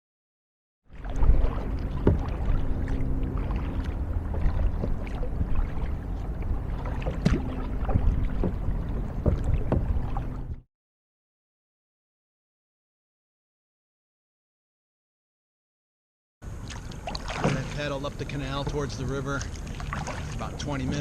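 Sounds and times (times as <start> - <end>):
paddle splashes: 0.9 - 10.6, 16.5 - 21.0
steady low hum: 0.9 - 10.6
knocks against hull: 1.1 - 10.6, 16.7 - 19.0.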